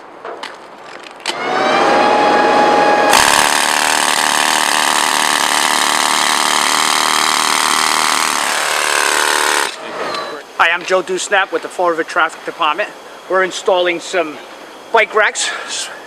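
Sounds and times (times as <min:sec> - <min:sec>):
hammer drill into concrete: 0:01.3 - 0:10.3.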